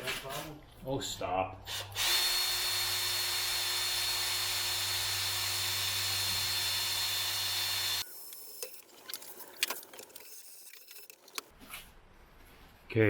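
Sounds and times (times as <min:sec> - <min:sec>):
power drill boring steel: 0:01.7 - 0:08.1.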